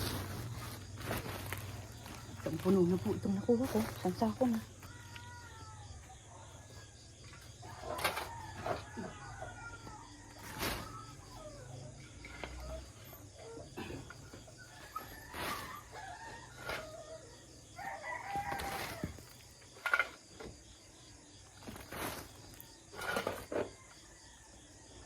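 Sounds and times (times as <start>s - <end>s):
rooster crowing: 7.6s - 11.6s, 14.6s - 19.3s.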